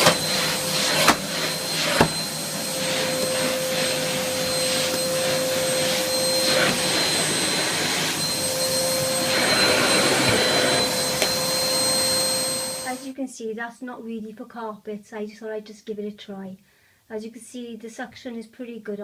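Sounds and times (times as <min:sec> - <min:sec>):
vacuum cleaner running on carpet: 0:00.0 - 0:13.1.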